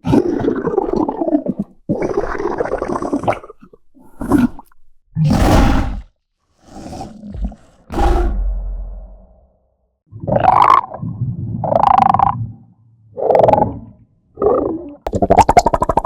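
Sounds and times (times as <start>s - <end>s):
rough creature calls: 0.0s - 9.5s
low hit: 7.9s - 9.5s.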